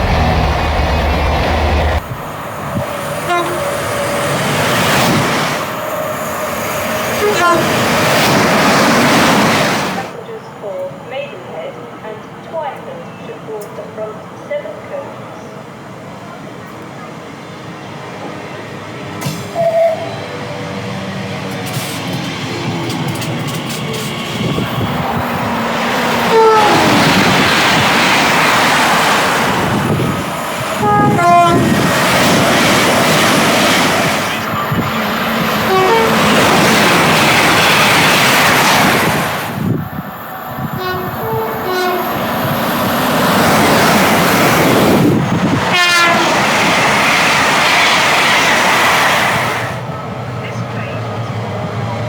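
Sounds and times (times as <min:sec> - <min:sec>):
train wheels roaring on rails: 0:00.0 - 0:52.0
two-tone train horn blasts: 0:03.2 - 0:03.9, 0:07.0 - 0:08.0, 0:19.5 - 0:20.2, 0:26.3 - 0:27.2, 0:30.8 - 0:31.8, 0:35.6 - 0:36.6, 0:40.7 - 0:42.2, 0:45.7 - 0:46.4.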